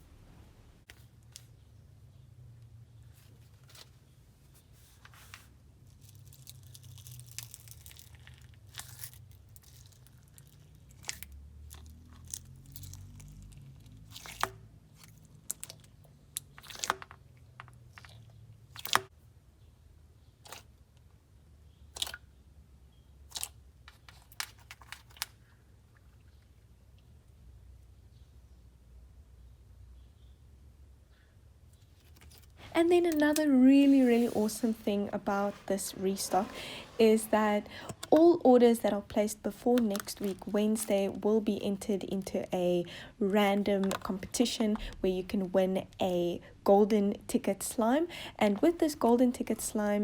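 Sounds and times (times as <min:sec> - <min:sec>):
faint low hum: 0:00.0 - 0:06.2
slime crunching and crackling: 0:05.9 - 0:19.1, 0:39.1 - 0:41.2.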